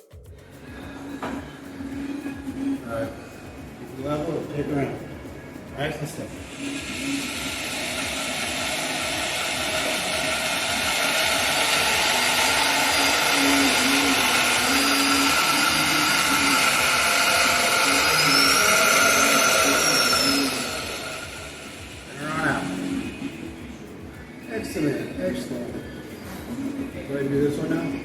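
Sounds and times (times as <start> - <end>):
electric power tool whining: 6.4 - 23.3.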